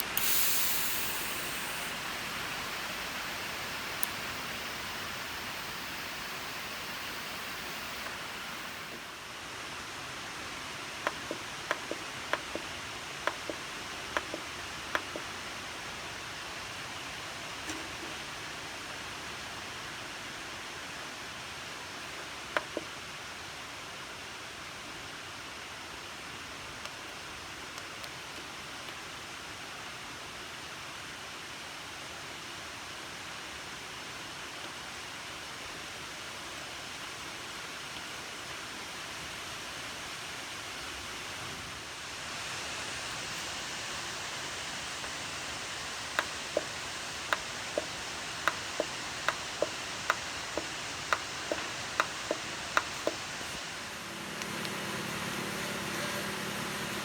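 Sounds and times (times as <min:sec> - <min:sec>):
sharp ticks: 0:00.0 - 0:09.1, 0:46.1 - 0:53.6
welding arc hissing: 0:00.0 - 0:09.4, 0:42.0 - 0:57.0.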